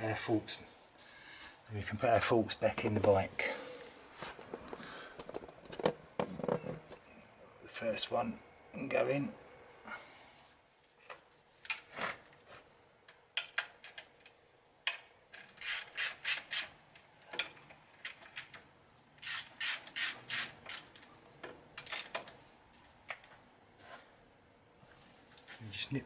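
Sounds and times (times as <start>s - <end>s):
ratchet spanner clicking: 15.6s - 16.7s, 19.2s - 20.9s.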